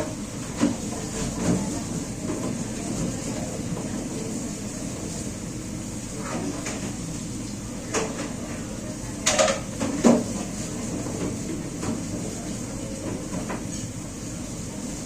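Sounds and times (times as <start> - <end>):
steady background hum: 0.0 - 15.0
dishes and pans clanking: 9.2 - 10.3.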